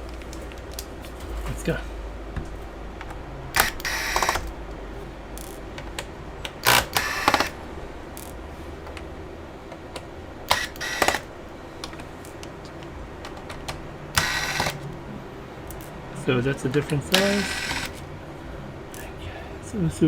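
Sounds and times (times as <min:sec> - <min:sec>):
screws and screwdriver clicking: 0:03.6 - 0:04.5, 0:05.4 - 0:07.6, 0:10.0 - 0:11.3, 0:12.2 - 0:14.9, 0:15.7 - 0:16.0, 0:16.8 - 0:18.0.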